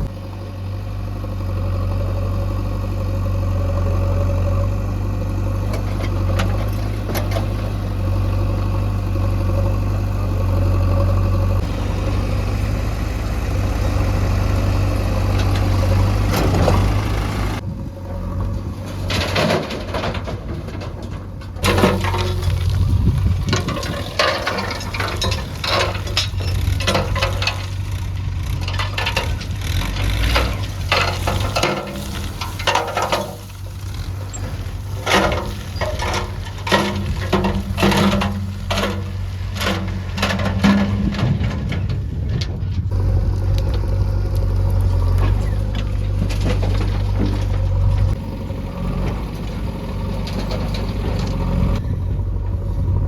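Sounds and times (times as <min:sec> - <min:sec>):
diesel engine running: 0:00.0 - 0:53.0
clattering and rattling: 0:18.6 - 0:43.0, 0:43.6 - 0:48.2, 0:48.9 - 0:51.8.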